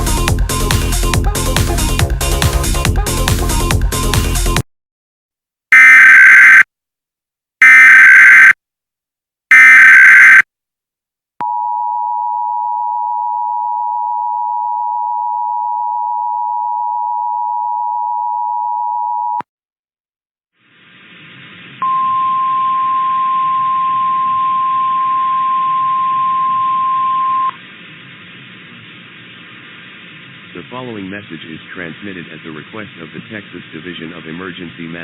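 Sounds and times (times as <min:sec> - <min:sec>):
loud data burst: 0:05.8 - 0:06.6, 0:07.6 - 0:08.6, 0:09.5 - 0:10.4
two-tone attention signal: 0:09.5 - 0:10.4
static hiss: 0:20.6 - 0:21.8, 0:27.5 - 0:35.0.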